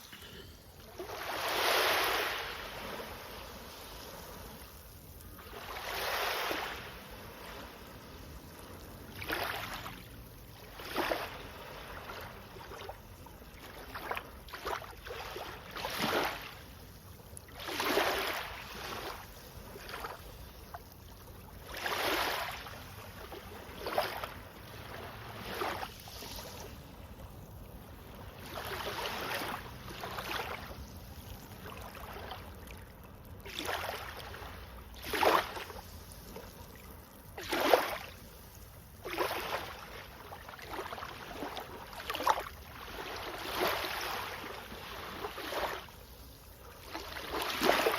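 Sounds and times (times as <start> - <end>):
small sea waves breaking: 0.0 - 47.9.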